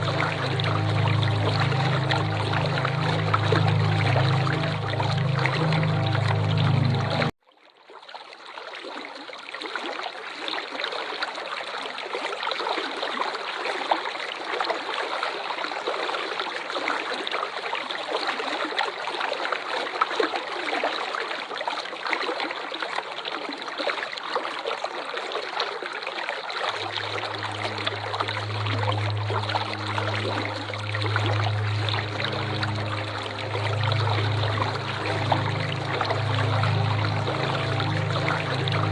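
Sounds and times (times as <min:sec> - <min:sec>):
low droning tone: 0:00.0 - 0:07.3, 0:26.8 - 0:38.9.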